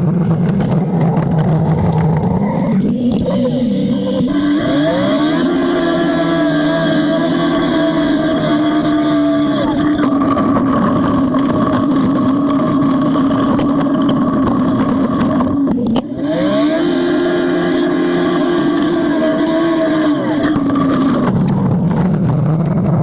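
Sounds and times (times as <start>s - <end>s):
diesel engine running at high revs: 0.0s - 23.0s.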